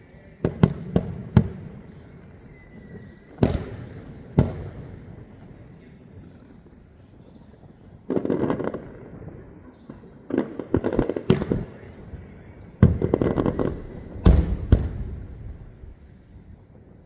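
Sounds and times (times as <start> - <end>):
fireworks crackling pops: 0.0 - 17.0
firework sharp bangs: 8.1 - 16.2.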